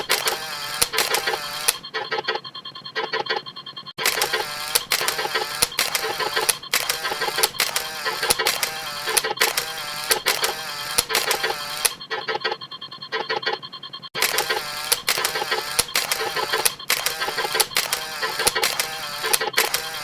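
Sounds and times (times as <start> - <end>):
camera shutter snaps: 0.0 - 1.8, 4.0 - 12.0, 14.2 - 20.0.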